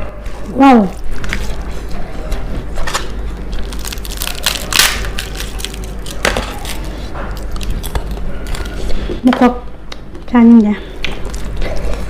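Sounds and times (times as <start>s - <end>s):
crunching fried food: 1.0s - 9.0s.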